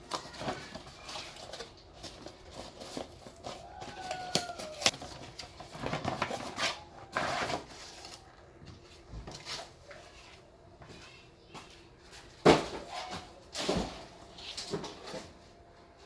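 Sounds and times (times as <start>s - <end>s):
packaging rustling and scraping: 0.0s - 10.5s.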